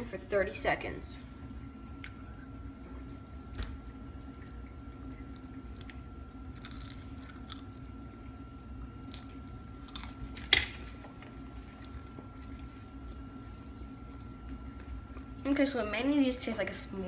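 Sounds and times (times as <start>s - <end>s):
sticky squishing of marshmallow: 3.2s - 13.4s.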